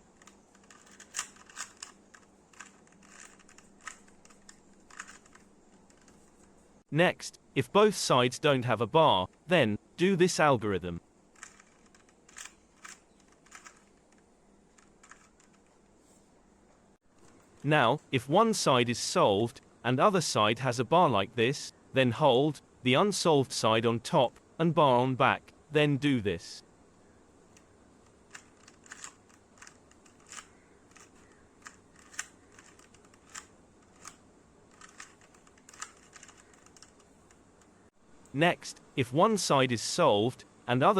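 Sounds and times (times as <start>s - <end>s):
puzzle cube clicks: 0.1s - 6.2s, 11.4s - 14.2s, 14.8s - 15.7s, 28.1s - 37.2s.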